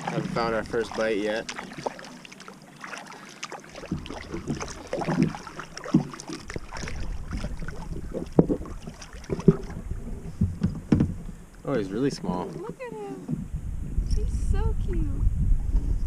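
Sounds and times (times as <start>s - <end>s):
knocks and clatter on a kayak: 0.0s - 13.7s
wind rumbling on microphone: 6.4s - 16.0s.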